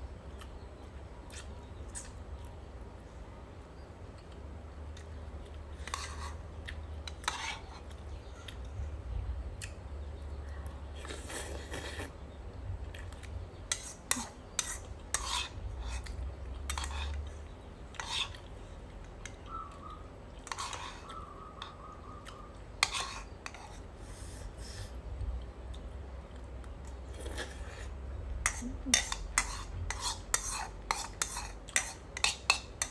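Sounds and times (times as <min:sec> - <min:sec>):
spoon clinking and scraping dish: 0:05.8 - 0:06.4, 0:13.6 - 0:17.2, 0:17.9 - 0:18.5, 0:20.4 - 0:21.8, 0:22.8 - 0:23.8, 0:28.4 - 0:32.9.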